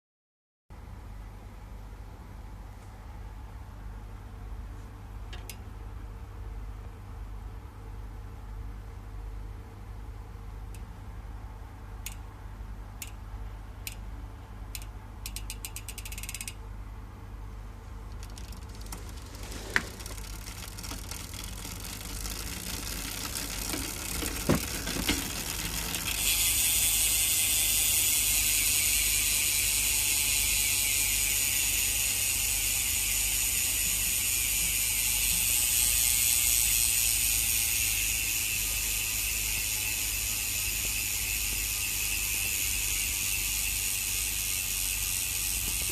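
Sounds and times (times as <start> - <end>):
bicycle freehub clicking: 12.0 - 12.3, 13.0 - 13.2, 13.8 - 14.0, 14.7 - 16.6, 18.0 - 45.9.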